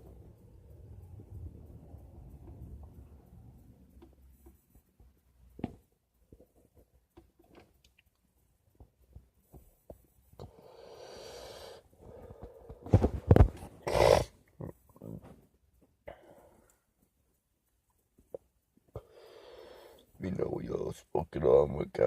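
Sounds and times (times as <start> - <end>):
faint handling clicks and taps: 0.0 - 10.6
person exhaling breathily: 19.0 - 20.0.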